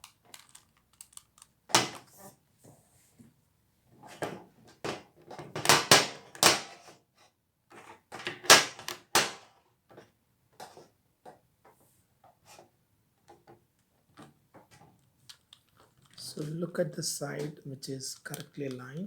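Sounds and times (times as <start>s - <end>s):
puzzle cube plastic clicks: 0.0s - 2.0s, 15.0s - 16.6s, 18.0s - 19.0s.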